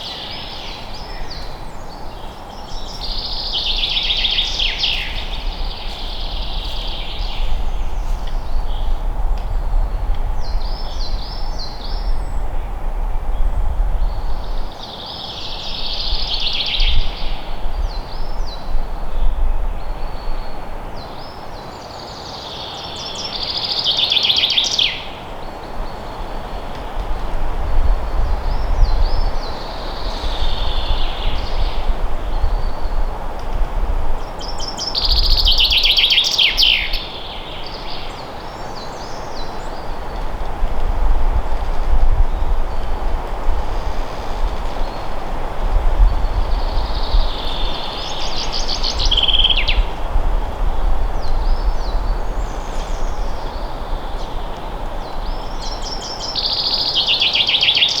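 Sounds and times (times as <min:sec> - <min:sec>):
songbird trilled song: 0:00.0 - 0:12.7, 0:14.0 - 0:26.8, 0:27.9 - 0:33.1, 0:34.2 - 0:40.3, 0:45.6 - 0:50.1, 0:51.2 - 0:58.0.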